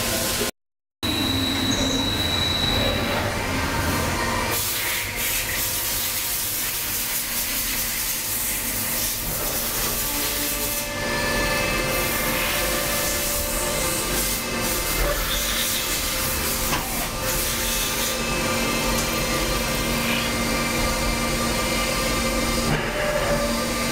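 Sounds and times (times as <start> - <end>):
machining center whining: 10.9 - 23.9.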